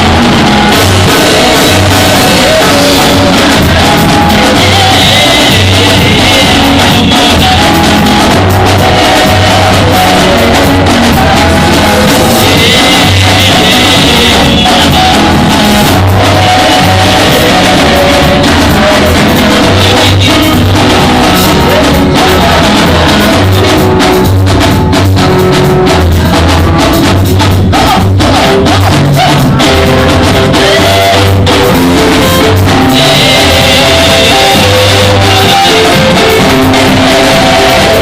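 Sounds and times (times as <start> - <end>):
upbeat band music: 0.0 - 38.0.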